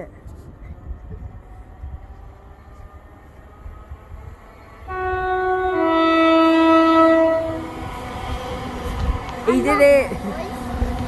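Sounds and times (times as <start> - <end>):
two-tone train horn: 4.8 - 7.9.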